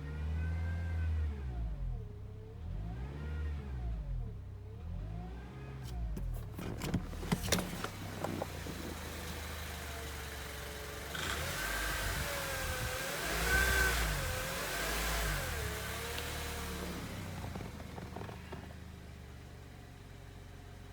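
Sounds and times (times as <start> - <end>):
power steering pump whining: 5.8 - 10.3, 15.5 - 18.9
car engine idling: 5.8 - 20.9.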